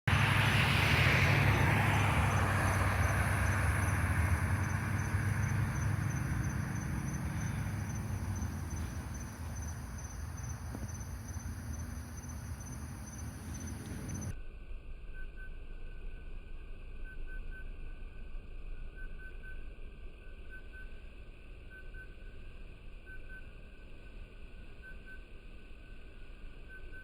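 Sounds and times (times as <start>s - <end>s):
deep low rumbling noise: 0.0s - 17.1s
faint high-pitched beeping: 15.0s - 16.2s, 16.9s - 22.4s, 23.0s - 27.0s.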